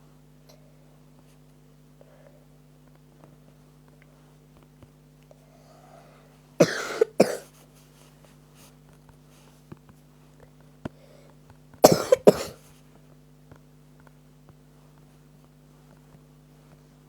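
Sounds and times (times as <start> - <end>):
person coughing: 6.6 - 7.5, 11.8 - 12.6.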